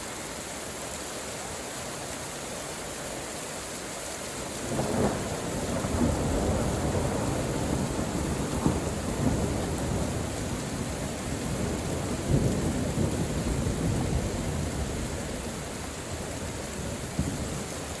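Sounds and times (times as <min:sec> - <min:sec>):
steady rain: 0:00.0 - 0:18.0
rolling thunder: 0:04.6 - 0:17.8.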